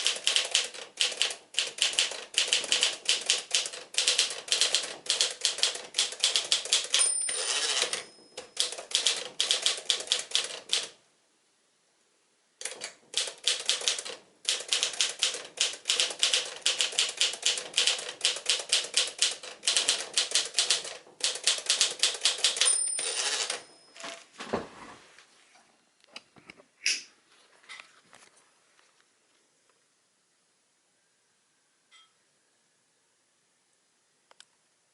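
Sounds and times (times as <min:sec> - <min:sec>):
typewriter carriage return: 0:00.0 - 0:10.9, 0:12.6 - 0:24.2
typewriter margin bell ding: 0:06.8 - 0:09.1, 0:22.4 - 0:24.2
typewriter key strikes: 0:12.6 - 0:23.6.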